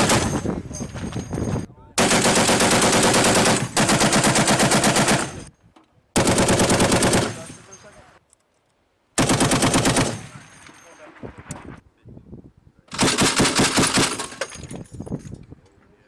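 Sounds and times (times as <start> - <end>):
heavy machine gun firing bursts: 0.0 - 0.4, 2.0 - 5.5, 6.2 - 7.5, 9.2 - 10.4, 12.9 - 14.4.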